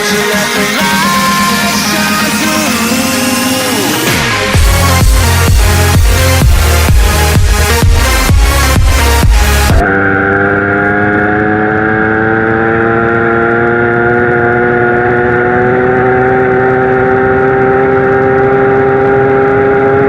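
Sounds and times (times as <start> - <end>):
dance music: 0.0 - 10.2.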